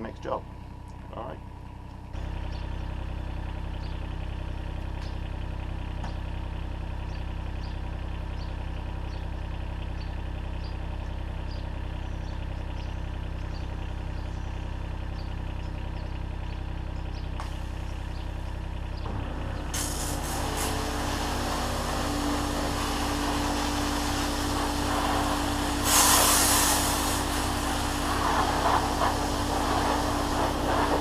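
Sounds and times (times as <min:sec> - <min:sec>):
engine idling: 0:00.0 - 0:31.0
hiss: 0:19.7 - 0:31.0.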